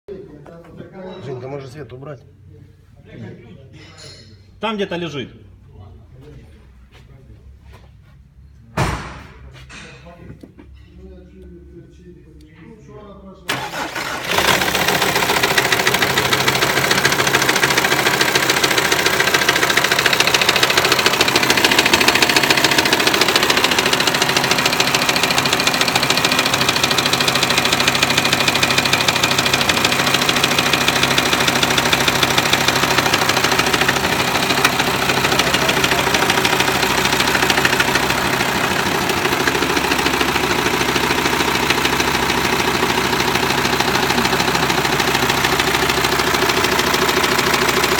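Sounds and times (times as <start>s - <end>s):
diesel engine idling with knock: 13.5s - 47.9s.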